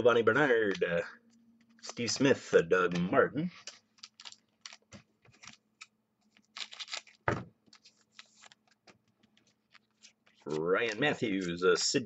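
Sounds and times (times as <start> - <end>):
trading cards flipped by hand: 3.6 - 11.2.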